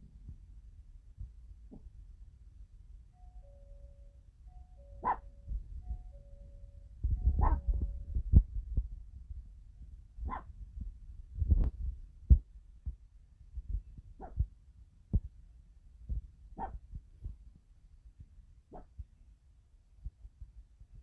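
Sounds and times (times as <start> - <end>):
intercom chime: 3.2 - 8.2
soft low thumps: 4.6 - 17.6
dog barking low: 5.0 - 5.3, 7.3 - 7.9, 10.2 - 10.5, 14.2 - 14.4, 16.6 - 16.8, 18.7 - 18.9.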